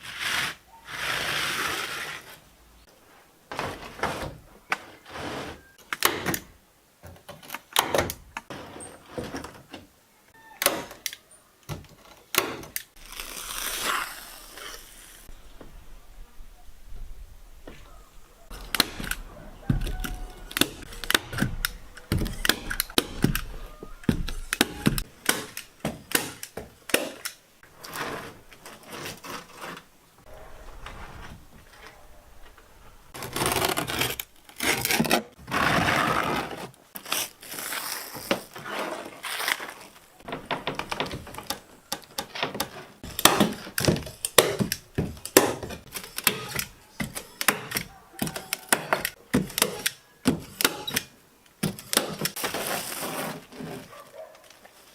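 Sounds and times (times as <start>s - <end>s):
wood knocks and taps: 17.6s - 25.1s.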